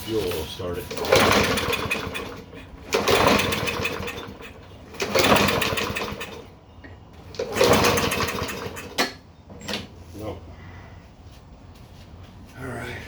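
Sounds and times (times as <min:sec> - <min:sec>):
lawn mower engine cranking: 0:00.1 - 0:06.6, 0:07.2 - 0:09.2.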